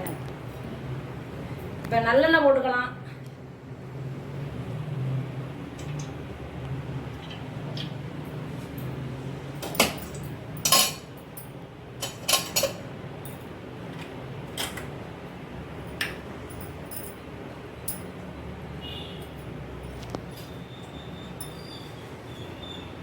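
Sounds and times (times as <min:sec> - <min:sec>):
metal utensils clinking: 0:09.6 - 0:11.1, 0:12.0 - 0:13.4.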